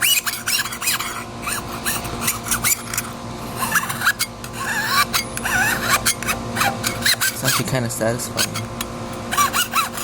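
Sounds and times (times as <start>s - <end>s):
short squeaks: 0.0s - 7.6s.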